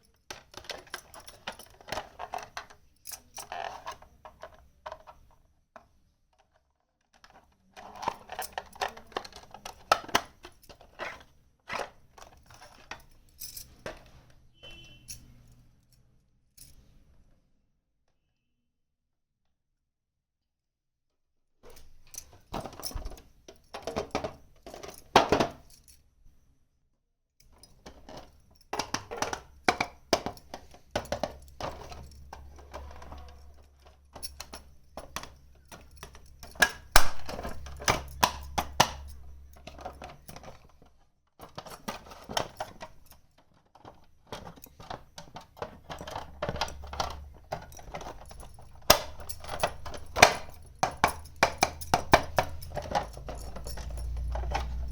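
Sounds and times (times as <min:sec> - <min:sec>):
plastic toy pieces clattering: 0:00.3 - 0:05.2, 0:07.2 - 0:13.0, 0:27.8 - 0:54.9.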